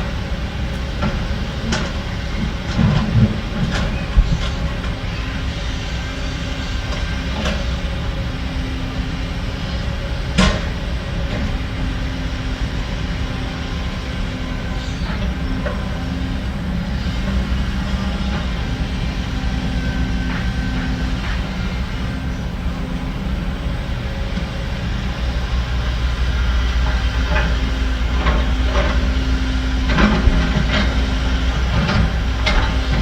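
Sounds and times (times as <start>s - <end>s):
diesel machinery running: 0.0s - 33.0s.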